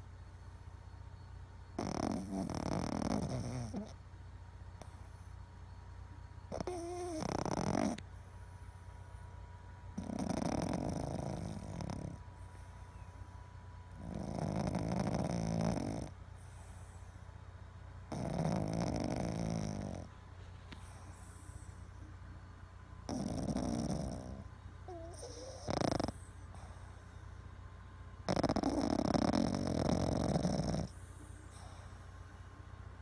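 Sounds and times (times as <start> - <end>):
dog snoring: 1.7 - 4.0, 4.8 - 5.4, 6.5 - 9.2, 9.9 - 13.2, 13.9 - 17.2, 18.1 - 22.1, 23.0 - 27.4, 28.2 - 32.2.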